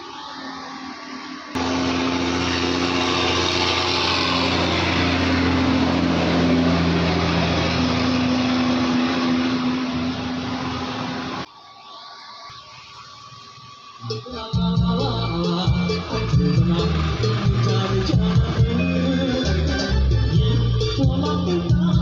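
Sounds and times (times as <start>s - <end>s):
cooling fan whirring: 0.0s - 11.5s.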